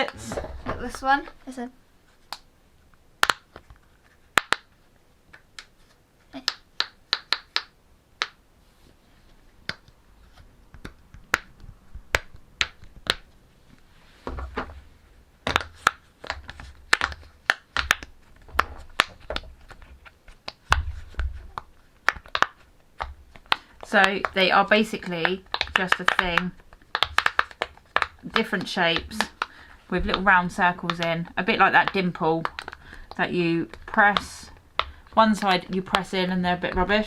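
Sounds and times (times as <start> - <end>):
pop-it toy bubbles popping: 6.4 - 8.4, 25.1 - 31.1.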